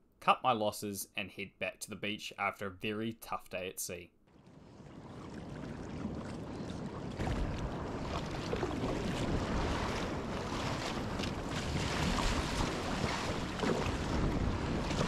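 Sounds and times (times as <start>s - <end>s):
waves washing around kayak: 4.4s - 15.0s
wind buffeting microphone: 4.6s - 15.0s.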